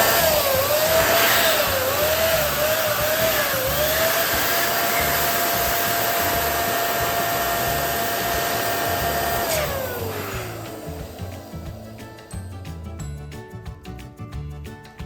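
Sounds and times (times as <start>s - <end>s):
rush of air: 0.0s - 5.0s
electric air pump whining: 0.0s - 12.6s.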